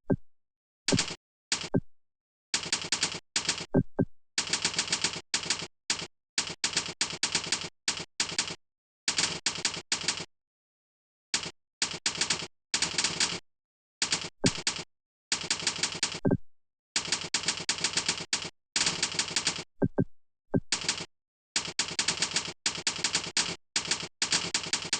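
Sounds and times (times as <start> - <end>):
typing on computer keyboard: 0.9 - 1.8, 2.6 - 3.8, 4.4 - 10.3, 11.4 - 13.4, 14.0 - 16.3, 17.0 - 19.7, 20.6 - 24.9.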